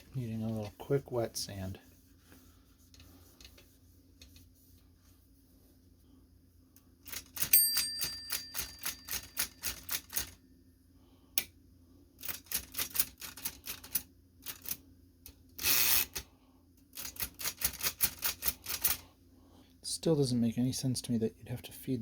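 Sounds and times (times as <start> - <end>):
typewriter keys clacking: 7.1 - 10.4
typewriter bell ding: 7.4 - 10.4.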